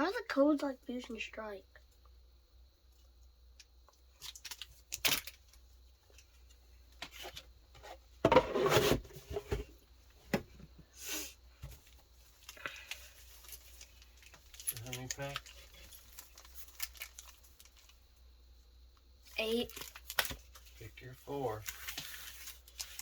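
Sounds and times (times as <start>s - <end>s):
packaging rustling and crinkling: 12.4s - 18.0s, 19.6s - 23.0s
packaging tearing: 14.8s - 17.8s.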